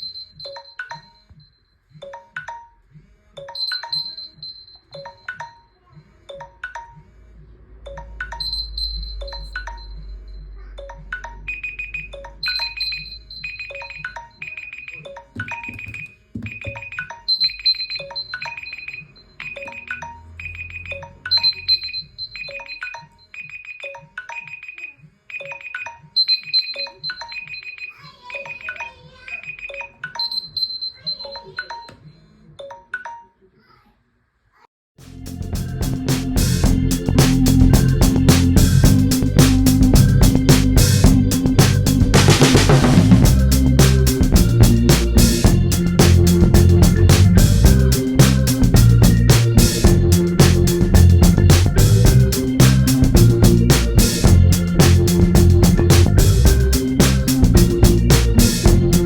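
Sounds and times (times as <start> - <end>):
phone alarm melody: 0.0 - 2.4, 3.4 - 5.7, 8.0 - 28.8, 35.7 - 59.0
higher electronic beep: 3.5 - 5.4, 8.0 - 27.8, 35.4 - 59.0.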